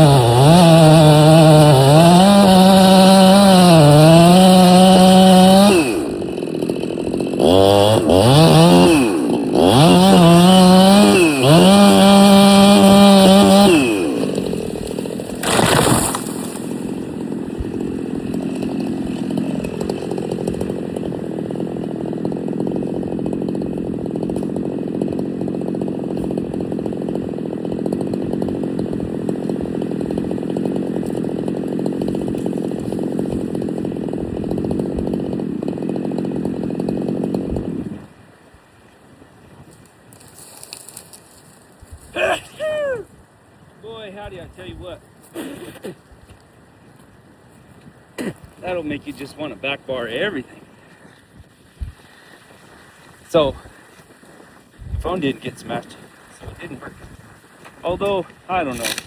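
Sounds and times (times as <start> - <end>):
tree falling crash: 0.0 - 27.1
chainsaw cutting: 0.0 - 59.0.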